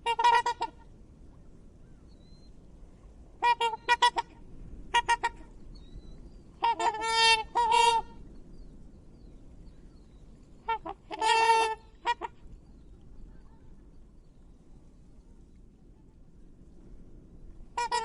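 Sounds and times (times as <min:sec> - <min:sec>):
swan trumpeting: 0:00.0 - 0:00.8, 0:03.4 - 0:04.3, 0:04.9 - 0:05.5, 0:06.6 - 0:08.2, 0:10.7 - 0:12.4, 0:17.8 - 0:18.0.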